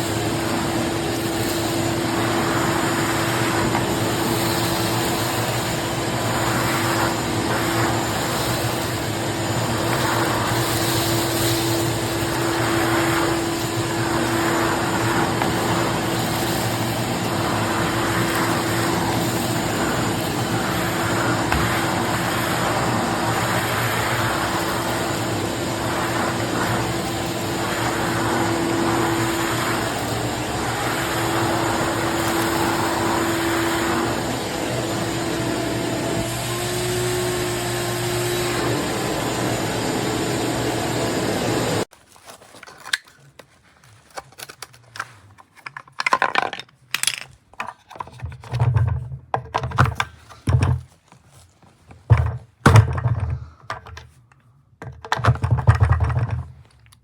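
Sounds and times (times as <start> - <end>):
air rushing through hose: 0.0 - 41.9
shop vacuum motor whine: 0.0 - 41.9.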